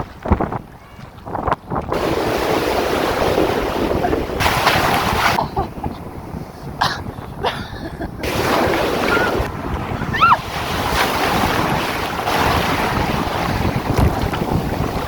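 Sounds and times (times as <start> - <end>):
wind buffeting microphone: 0.0 - 15.0
ocean surf: 1.9 - 15.0.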